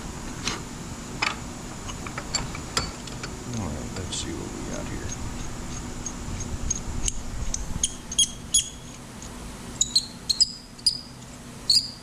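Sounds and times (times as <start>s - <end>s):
stainless threads squeaking: 5.1s - 9.0s, 9.8s - 11.1s, 11.7s - 12.0s.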